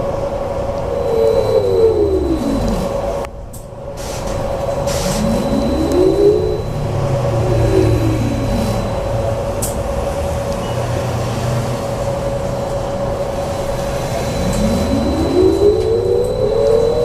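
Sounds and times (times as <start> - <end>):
low running rumble: 0.0 - 17.0
electric motor whine: 0.9 - 3.3, 4.7 - 11.5, 13.2 - 17.0.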